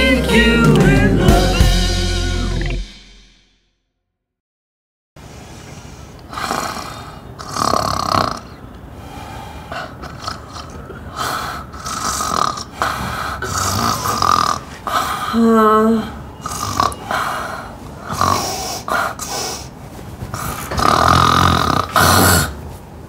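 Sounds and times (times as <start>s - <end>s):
woman snoring loudly: 6.3s - 9.2s, 10.1s - 19.3s, 20.4s - 22.6s.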